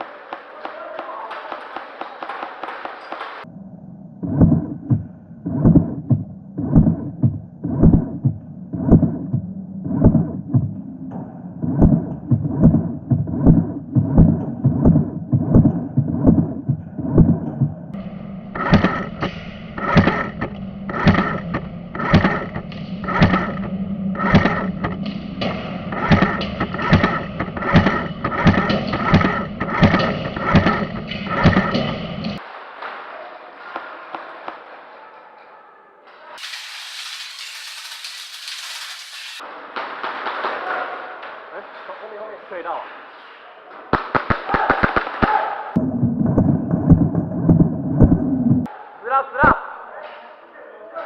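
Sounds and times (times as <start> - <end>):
electronic music with driving beat: 18.6 - 32.4.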